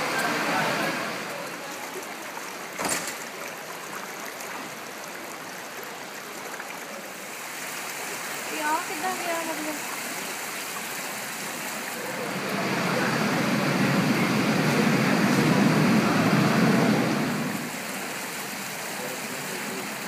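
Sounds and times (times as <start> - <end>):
vehicle passing through water: 0.0 - 5.9, 7.0 - 20.0
water rushing from burst pipe: 0.0 - 20.0.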